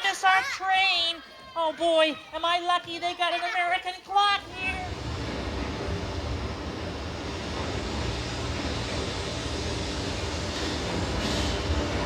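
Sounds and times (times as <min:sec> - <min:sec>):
train rumbling: 0:04.4 - 0:12.0
hiss: 0:04.8 - 0:12.0.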